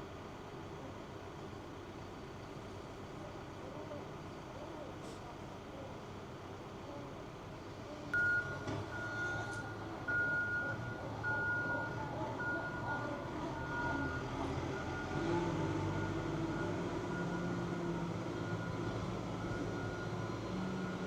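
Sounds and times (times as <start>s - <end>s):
low engine rumble: 0.0s - 21.0s
vehicle reversing alarm beeping: 8.1s - 21.0s.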